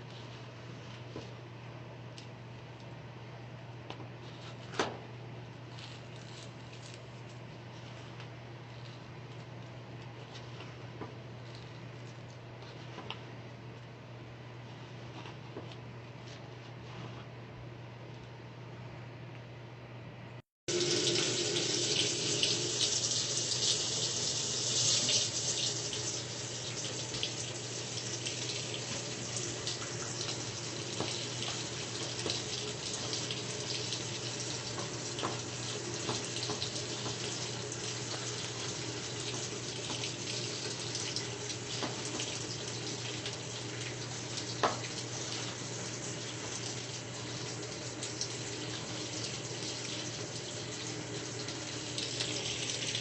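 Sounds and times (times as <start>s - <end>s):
water running into washing machine: 20.7s - 53.0s.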